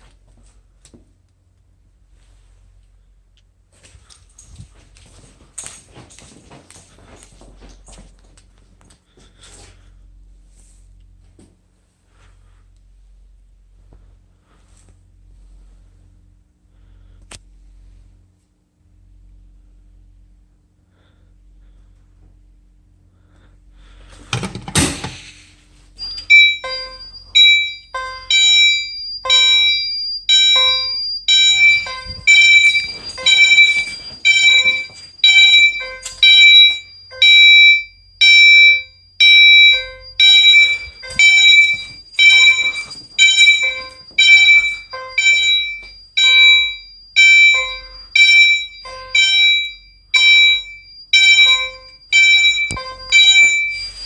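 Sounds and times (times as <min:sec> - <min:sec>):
fire alarm pulsed tones: 0:24.4 - 0:54.0
alarm switch click: 0:24.7 - 0:25.4, 0:26.0 - 0:54.0.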